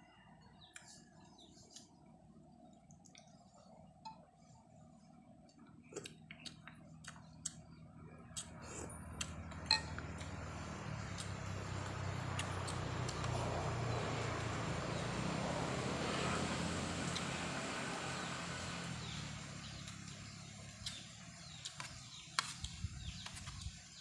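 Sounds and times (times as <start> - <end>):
vehicle engine hum: 6.3 - 24.0.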